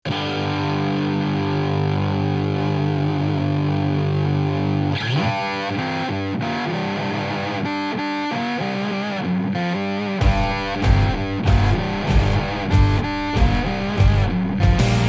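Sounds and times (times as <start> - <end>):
distorted electric guitar: 0.0 - 15.0
drums: 10.2 - 15.0.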